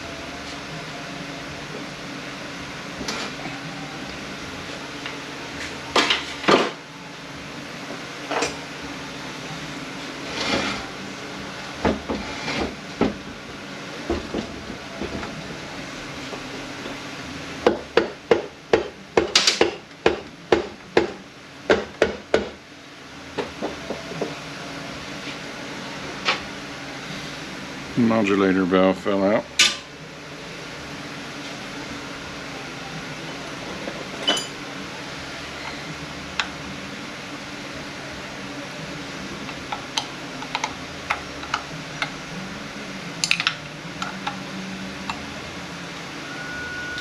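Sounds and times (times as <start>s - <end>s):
steady shop hum: 0.0s - 47.0s.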